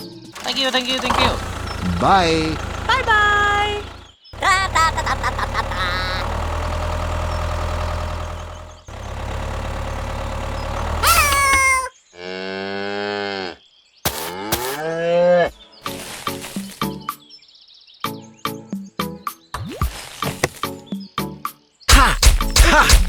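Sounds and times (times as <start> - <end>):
low motor hum: 0.4 - 11.6.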